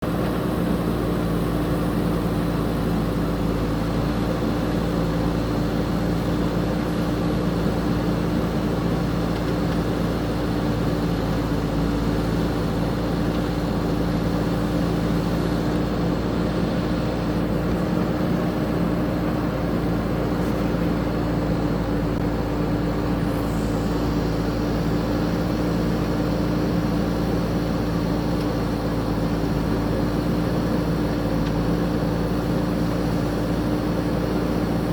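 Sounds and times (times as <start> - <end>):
diesel engine running steadily: 0.0 - 34.9.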